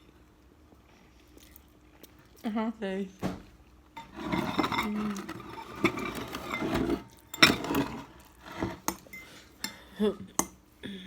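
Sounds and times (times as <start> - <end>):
forks scraping glass bowls: 4.0 - 9.3.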